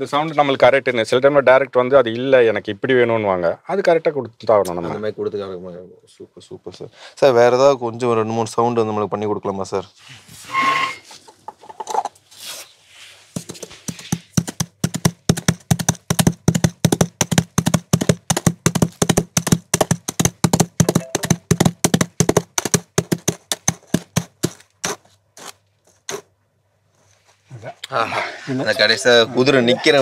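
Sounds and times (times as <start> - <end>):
coconut shell hoofbeats: 13.4 - 26.3.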